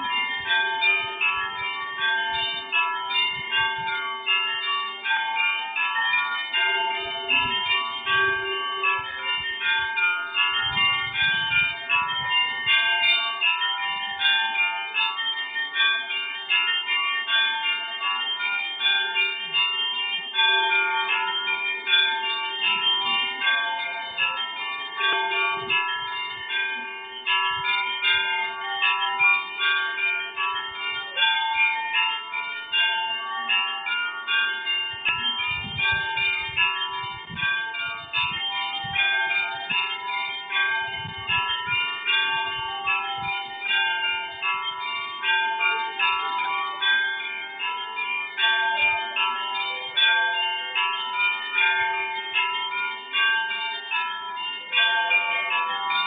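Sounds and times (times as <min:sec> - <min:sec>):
church bells pealing: 0:00.0 - 0:56.0
hum of a large bell: 0:00.0 - 0:56.0.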